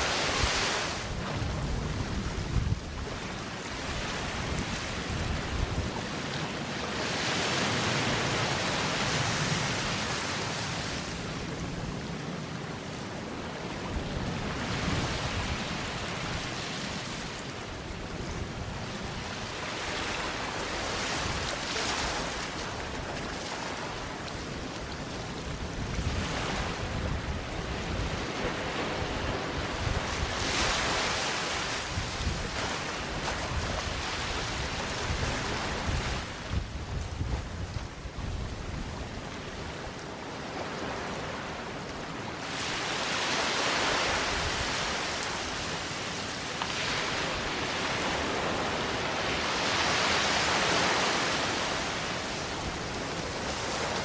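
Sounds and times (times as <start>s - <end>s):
small waves washing onto beach: 0.0s - 54.0s
wind rumble on microphone: 0.0s - 54.0s.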